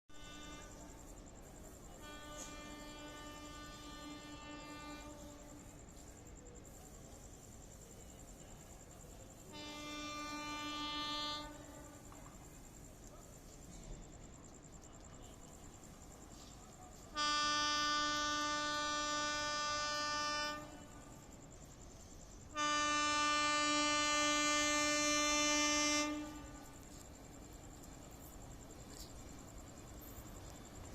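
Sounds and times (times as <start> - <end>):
distant locomotive horn blast: 0.1 - 1.0, 1.9 - 5.7, 9.5 - 12.2, 17.1 - 21.0, 22.5 - 26.8.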